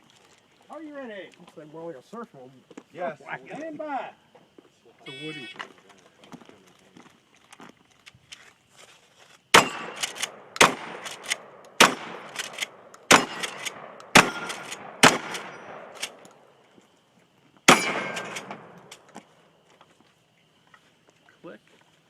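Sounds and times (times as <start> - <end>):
shotgun shots echoing: 9.5 - 16.2, 17.7 - 19.1.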